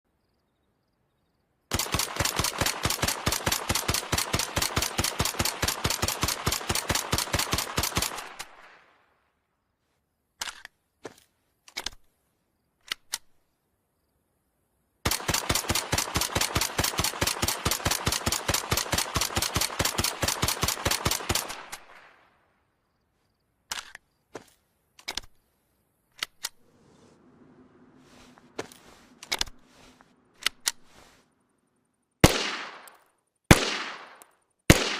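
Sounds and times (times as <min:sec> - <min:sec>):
rifle firing rapid shots: 0:01.7 - 0:08.9, 0:15.0 - 0:22.3, 0:32.2 - 0:34.9
single rifle shots: 0:01.7 - 0:09.0, 0:15.0 - 0:22.4, 0:32.2 - 0:34.9.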